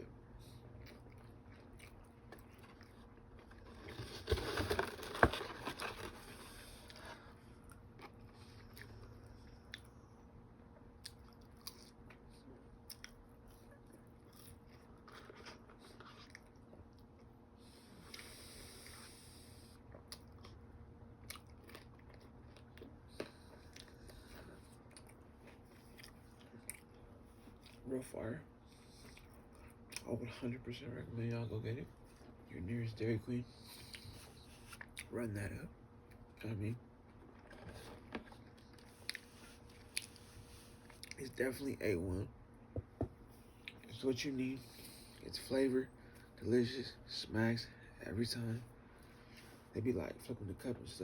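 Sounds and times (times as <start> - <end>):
quiet chewing: 0.4 - 27.8, 28.7 - 30.1, 37.0 - 41.2.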